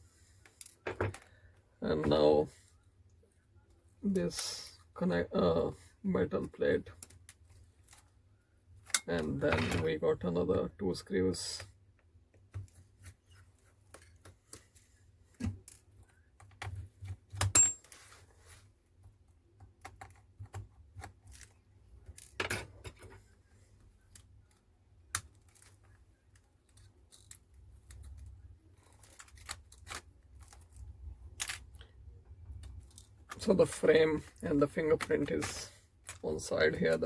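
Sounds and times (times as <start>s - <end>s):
plastic phone parts handled: 24.0s - 37.0s.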